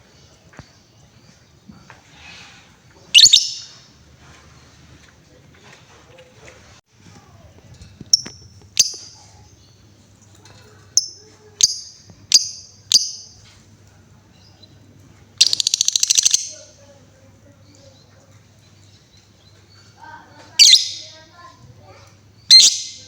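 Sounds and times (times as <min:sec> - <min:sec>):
bird chirping: 0:03.0 - 0:03.9, 0:08.1 - 0:13.6, 0:14.2 - 0:21.2, 0:22.3 - 0:23.0
bird rattling trill: 0:15.4 - 0:16.7.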